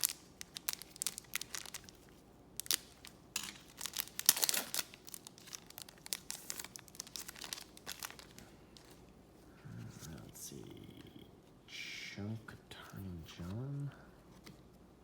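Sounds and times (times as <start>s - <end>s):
wrapper crinkling and tearing: 0.0s - 9.0s.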